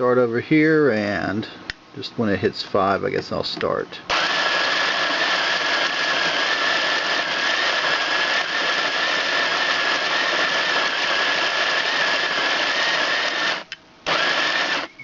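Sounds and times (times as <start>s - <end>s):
coffee grinder grinding beans: 4.1s - 14.9s.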